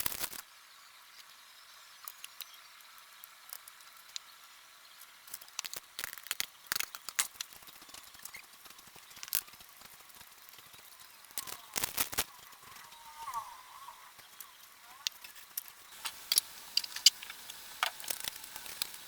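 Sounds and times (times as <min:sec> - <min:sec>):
small clicks and ticks: 0:00.0 - 0:00.4, 0:02.0 - 0:19.0
low hiss: 0:15.8 - 0:19.0.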